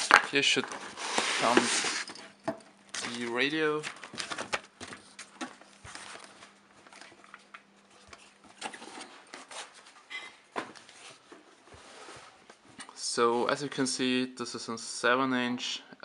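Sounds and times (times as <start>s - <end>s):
packaging rustling and crackling: 0.0s - 2.2s, 2.9s - 9.8s.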